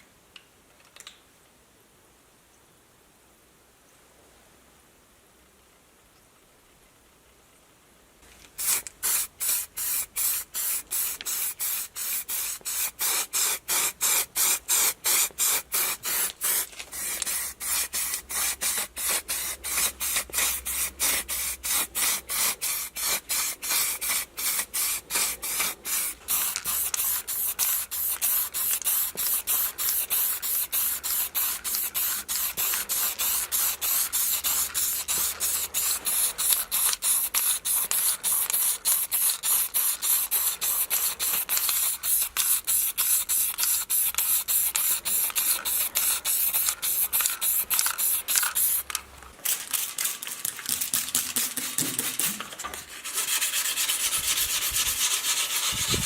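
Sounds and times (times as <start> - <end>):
rapid rhythmic hissing strokes: 8.6 - 50.6.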